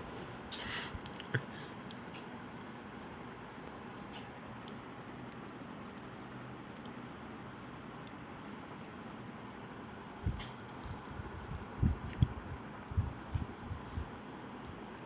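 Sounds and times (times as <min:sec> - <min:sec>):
steady hiss: 0:00.0 - 0:02.4
faint rustles and clicks: 0:00.0 - 0:03.0, 0:03.6 - 0:15.0
soft low thumps: 0:10.3 - 0:14.1.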